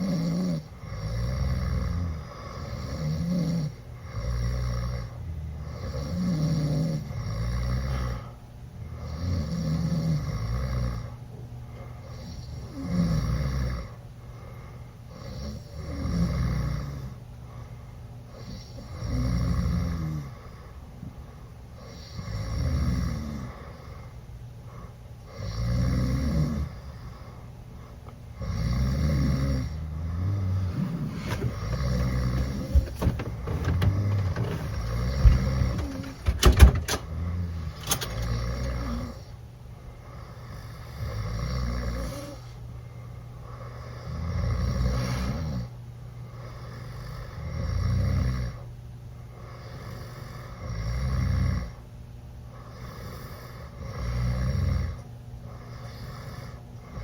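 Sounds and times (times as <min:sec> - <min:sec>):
boys snoring loudly: 0:00.0 - 0:08.2, 0:08.8 - 0:11.1, 0:12.2 - 0:13.9, 0:21.9 - 0:23.6, 0:25.3 - 0:26.9, 0:28.4 - 0:32.8, 0:40.5 - 0:42.4, 0:43.9 - 0:45.7.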